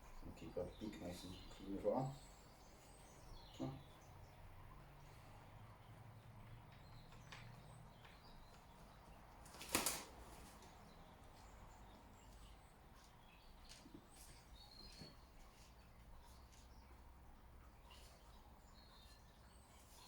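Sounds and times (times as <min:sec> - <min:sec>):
faint high bird chirps: 0:00.0 - 0:05.2, 0:10.9 - 0:17.0
rustle: 0:06.8 - 0:20.0.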